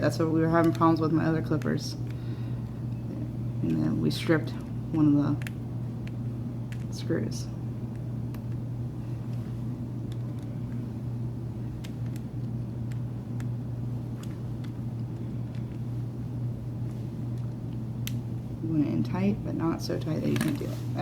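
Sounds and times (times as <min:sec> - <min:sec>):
low hum: 0:00.0 - 0:21.0.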